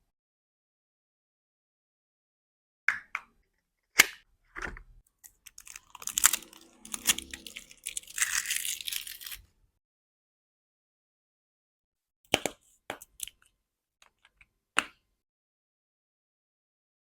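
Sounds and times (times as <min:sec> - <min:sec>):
packaging crinkling and rustling: 0:05.3 - 0:09.4
packaging clicks and taps: 0:12.3 - 0:14.9.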